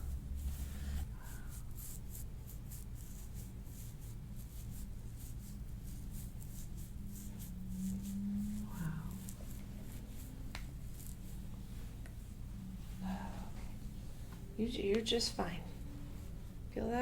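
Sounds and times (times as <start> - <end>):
rubbing and scraping on skin: 0.0 - 13.1
steady low hum: 0.0 - 17.0.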